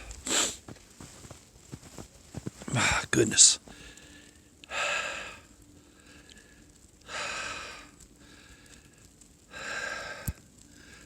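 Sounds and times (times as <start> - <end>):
man breathing heavily: 0.0 - 1.4, 3.7 - 11.0.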